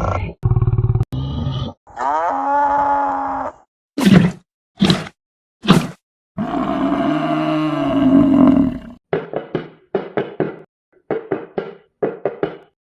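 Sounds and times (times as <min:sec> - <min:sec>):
low drawn-out animal call: 0:00.0 - 0:03.7, 0:06.4 - 0:08.9.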